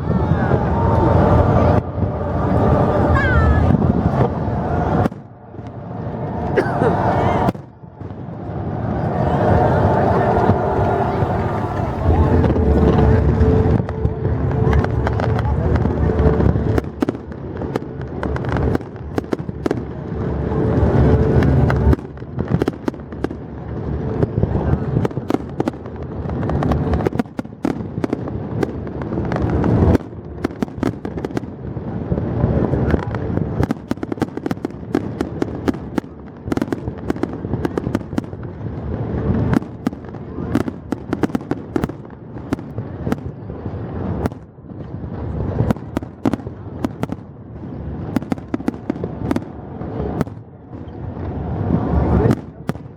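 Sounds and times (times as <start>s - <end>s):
low rumble: 0.0s - 25.0s
fireworks bangs and crackles: 0.0s - 52.9s.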